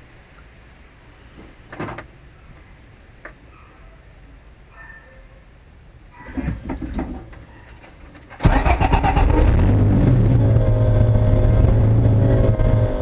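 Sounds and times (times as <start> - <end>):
car engine starting and idling: 8.4 - 13.0.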